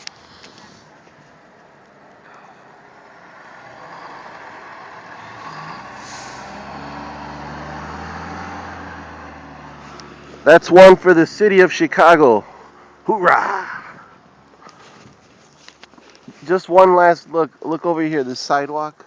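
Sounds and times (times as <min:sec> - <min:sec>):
truck engine drone: 0:00.0 - 0:15.1
rushing noise of passing truck: 0:02.3 - 0:13.0.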